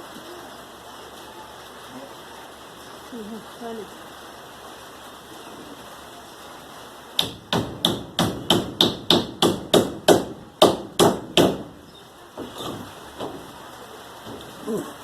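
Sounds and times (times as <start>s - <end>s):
hammer driving nails: 7.2s - 11.8s.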